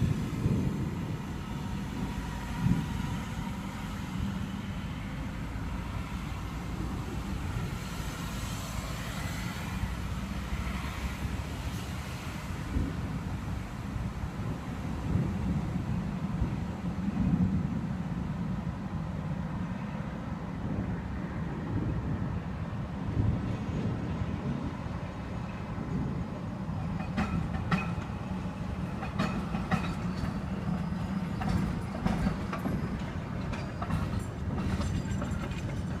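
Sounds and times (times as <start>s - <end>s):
rail vehicle rumbling past: 0.0s - 36.0s
wheels clicking and squealing on track: 26.7s - 36.0s.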